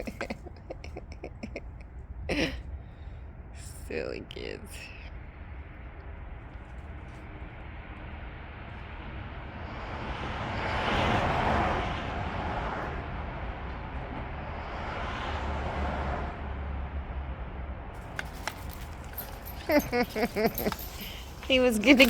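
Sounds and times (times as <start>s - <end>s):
vehicle passing by: 8.1s - 22.0s.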